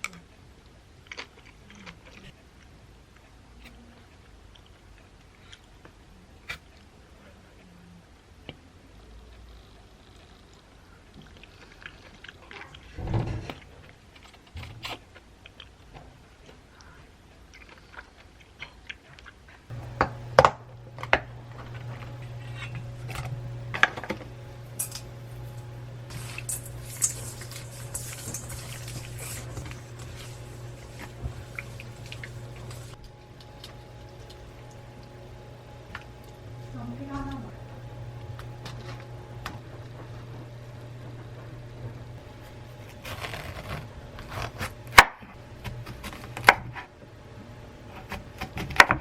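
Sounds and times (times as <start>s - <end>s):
kitchen appliance humming: 19.7s - 49.0s
utensils and dishes clattering: 22.3s - 34.4s.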